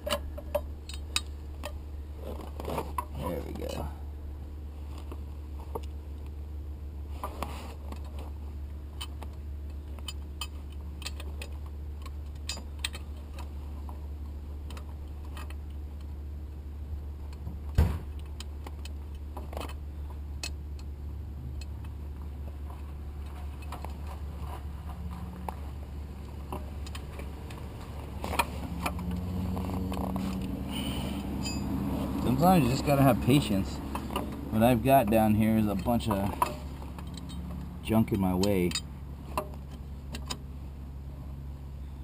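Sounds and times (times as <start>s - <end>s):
steady low hum: 0.0s - 42.0s
metallic tool clicks and clinks: 31.4s - 31.7s, 38.7s - 38.9s.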